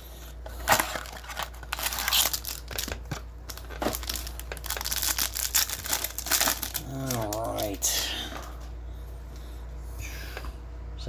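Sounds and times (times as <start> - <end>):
cards and packaging rustling: 0.4 - 8.5.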